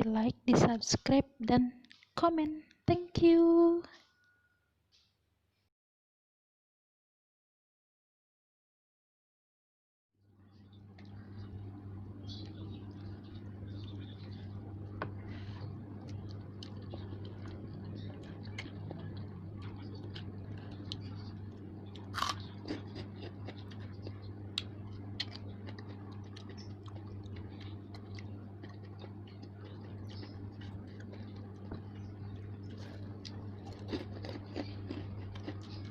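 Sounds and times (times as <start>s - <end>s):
steady low hum: 0.0s - 4.0s, 10.2s - 35.9s
person chewing noodles: 12.8s - 35.9s.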